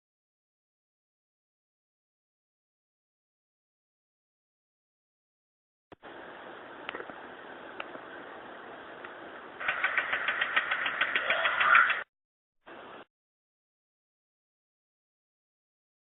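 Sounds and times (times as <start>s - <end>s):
recording hiss: 5.9s - 11.1s, 12.7s - 13.1s
clicks: 9.0s - 12.0s
rapid rattling knocks: 9.6s - 12.0s.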